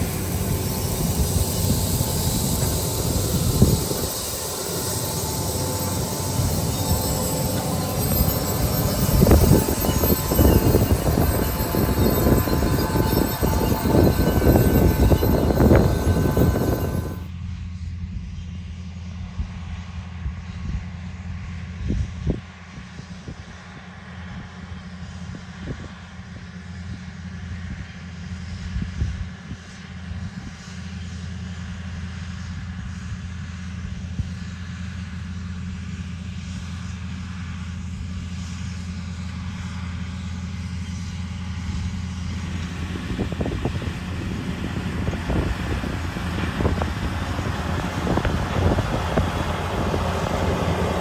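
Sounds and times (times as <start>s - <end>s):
tractor diesel engine running: 0.0s - 17.3s, 37.8s - 51.0s.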